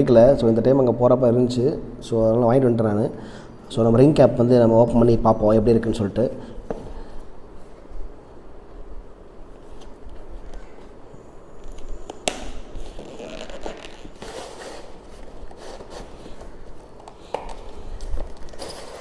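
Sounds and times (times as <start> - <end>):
packaging rustling and scraping: 9.4 - 19.0.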